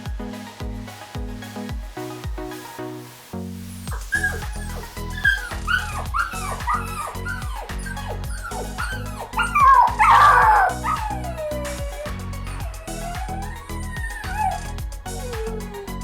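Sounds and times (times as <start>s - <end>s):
background music: 0.0s - 16.0s
dog whining: 3.9s - 15.9s
dog yelping: 4.1s - 15.6s.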